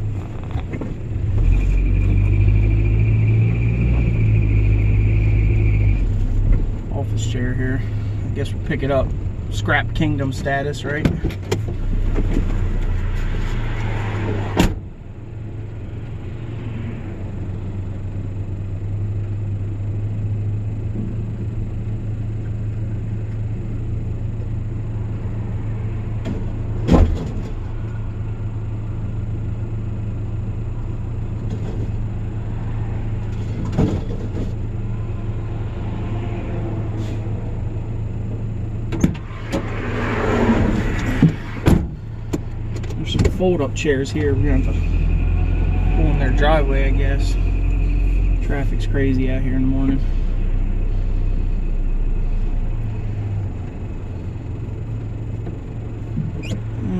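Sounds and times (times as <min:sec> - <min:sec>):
vehicle engine humming: 0:00.0 - 0:56.9.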